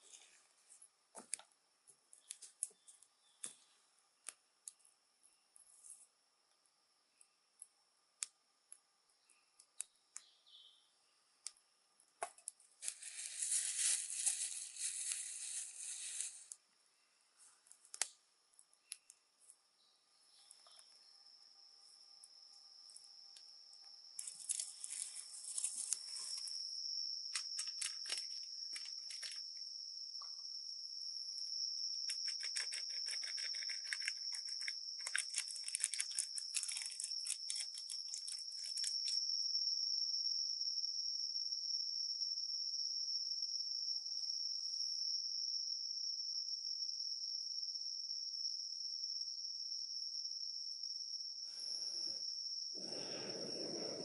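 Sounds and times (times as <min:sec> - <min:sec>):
insects droning: 0:00.0 - 0:54.0
rapid crackling and crunching: 0:12.8 - 0:16.6, 0:32.2 - 0:39.2.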